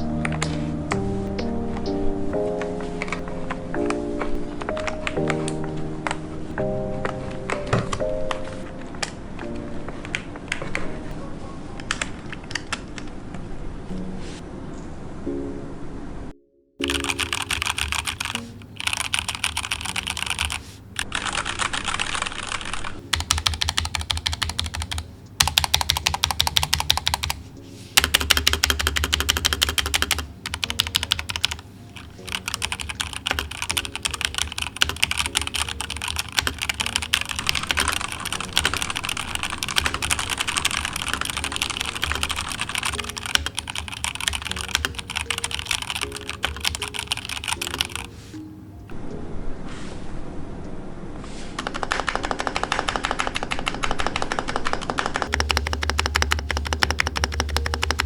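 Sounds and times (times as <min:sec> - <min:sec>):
mechanical keyboard typing: 0:16.8 - 0:27.4, 0:28.0 - 0:48.1, 0:51.6 - 0:58.0.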